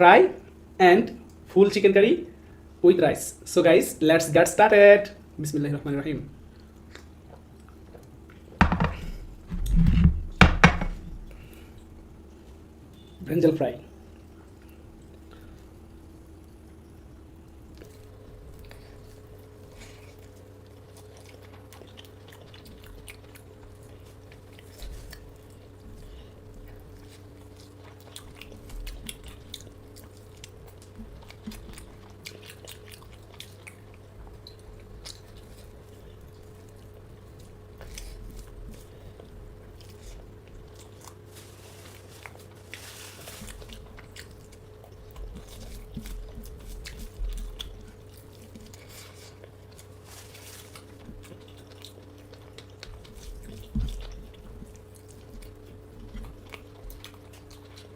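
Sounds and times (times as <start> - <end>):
steady low hum: 0.0 - 57.9
person chewing crunchy food: 6.4 - 10.0, 17.4 - 57.9.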